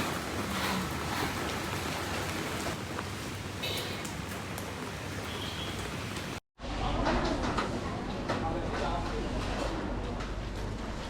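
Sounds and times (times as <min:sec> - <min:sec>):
heavy rain downpour: 0:00.0 - 0:06.4.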